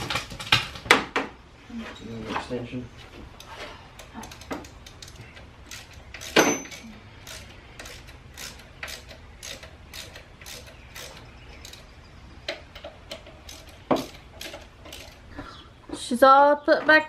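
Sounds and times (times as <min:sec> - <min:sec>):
ratchet wrench clicking: 0:03.4 - 0:11.9, 0:12.7 - 0:15.3.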